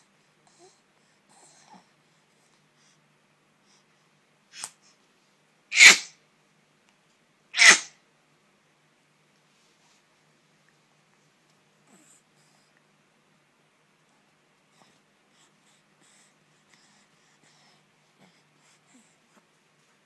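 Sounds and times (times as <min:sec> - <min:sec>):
pet sneezing: 0:05.7 - 0:06.2, 0:07.6 - 0:08.0.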